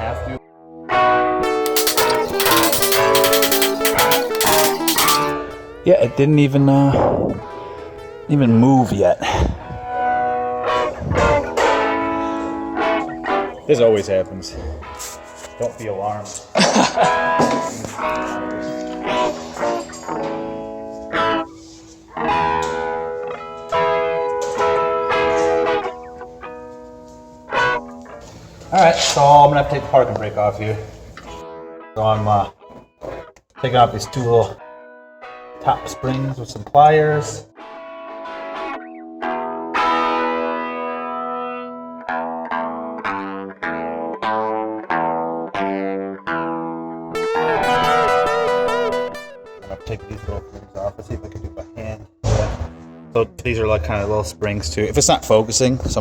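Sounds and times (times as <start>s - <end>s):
ringing struck chords: 1.4s - 5.4s, 47.2s - 50.8s
guitar picked chords with effects: 47.2s - 50.9s.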